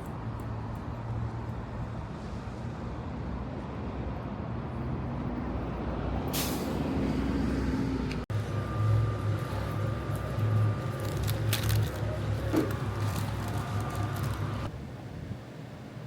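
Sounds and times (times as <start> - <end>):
vehicle engine rumble: 0.0 - 16.0
hiss of air: 6.3 - 6.9.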